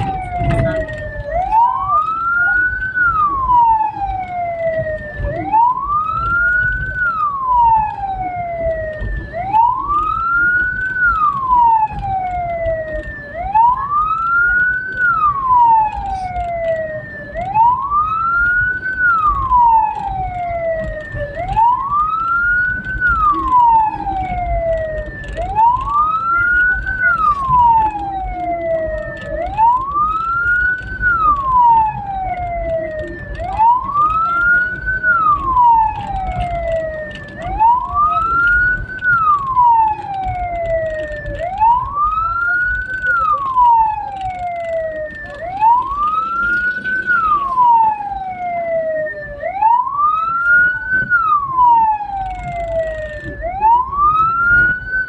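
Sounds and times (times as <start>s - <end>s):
siren wailing: 0.0s - 55.0s.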